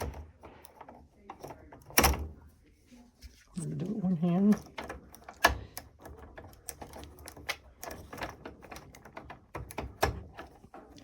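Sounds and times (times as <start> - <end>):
plastic connectors clicking and rattling: 4.2 - 11.0.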